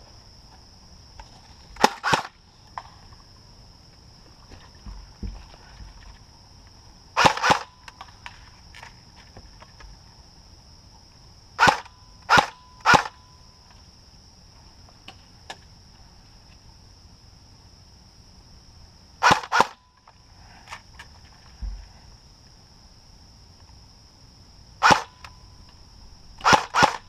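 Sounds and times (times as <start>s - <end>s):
airsoft gun shots: 1.8s - 2.3s, 7.2s - 7.8s, 11.6s - 13.2s, 19.2s - 19.8s, 24.8s - 25.2s, 26.4s - 27.0s.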